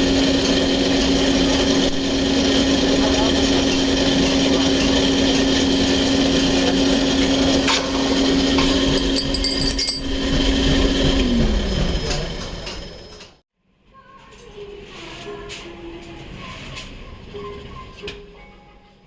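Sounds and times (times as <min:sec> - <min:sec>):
electric motor humming and grinding: 0:00.0 - 0:13.4.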